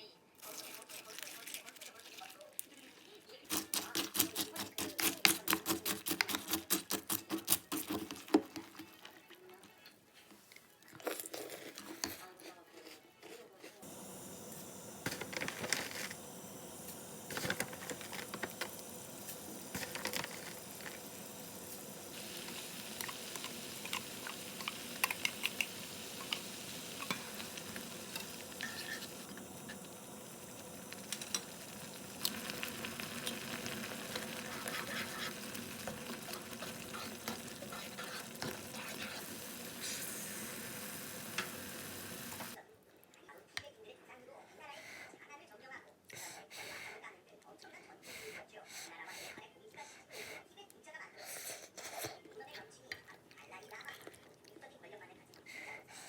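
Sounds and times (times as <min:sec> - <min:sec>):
food sizzling in a frying pan: 0:13.8 - 0:42.6.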